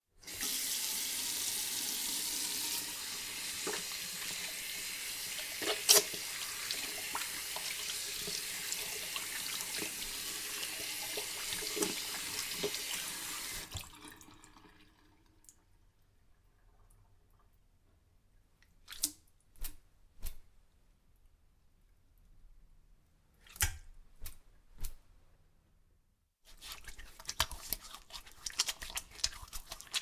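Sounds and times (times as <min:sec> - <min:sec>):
hands washing under water: 0:00.2 - 0:14.1, 0:26.5 - 0:30.0
tap water running into sink: 0:00.2 - 0:15.0.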